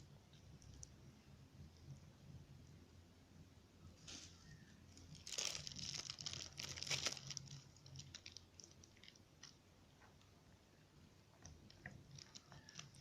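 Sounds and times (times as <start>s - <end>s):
food packaging crinkling: 5.0s - 9.6s, 11.7s - 13.0s.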